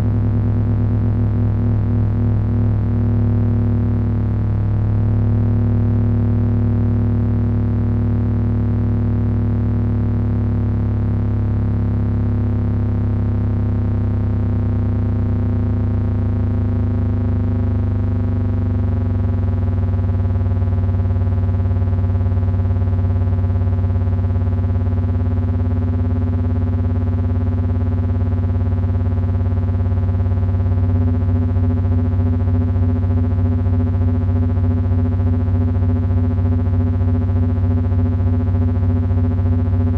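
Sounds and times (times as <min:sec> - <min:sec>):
electronic drone of low tones: 0:00.0 - 0:39.9.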